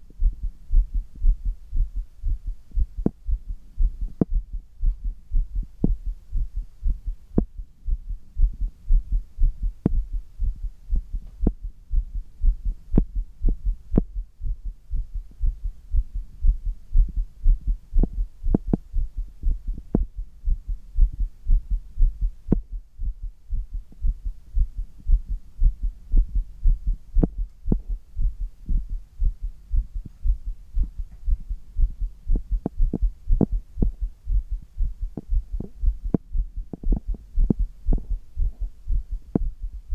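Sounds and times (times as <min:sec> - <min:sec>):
heartbeat thumps: 0:00.0 - 0:39.9.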